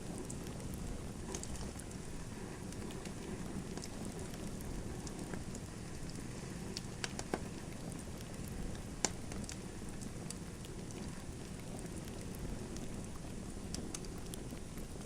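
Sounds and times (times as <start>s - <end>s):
wood fire crackling: 0.0s - 15.0s
sharp pops of fire: 6.8s - 7.6s, 8.4s - 9.6s.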